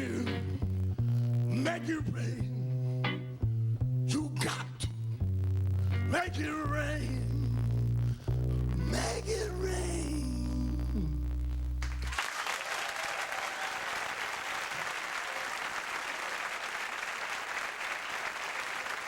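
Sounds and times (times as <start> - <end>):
audience applauding: 11.8 - 19.0.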